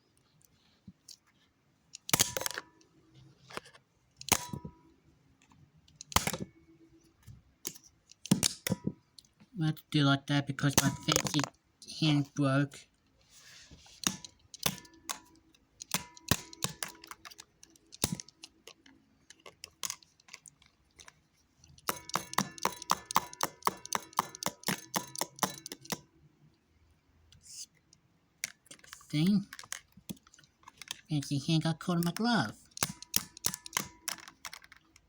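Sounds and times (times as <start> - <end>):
small hard objects clicking: 21.7 - 26.0, 31.9 - 35.0.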